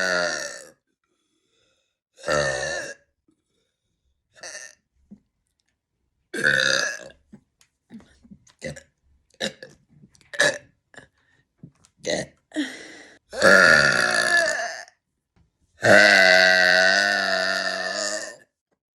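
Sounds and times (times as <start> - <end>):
woman burping: 0.0 - 0.8, 2.2 - 3.1, 6.4 - 7.2, 10.3 - 11.1, 12.0 - 14.9, 15.8 - 18.5.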